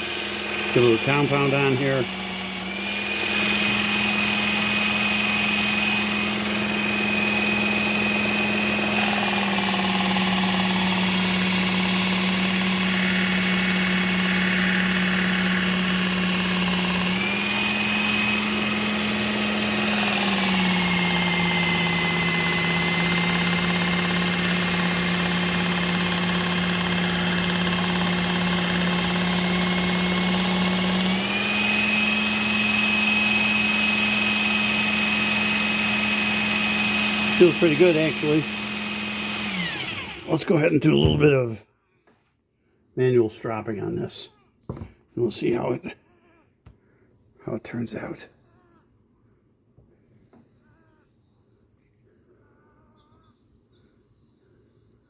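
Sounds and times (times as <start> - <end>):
belt sharpener motor whining: 0.0 - 41.4.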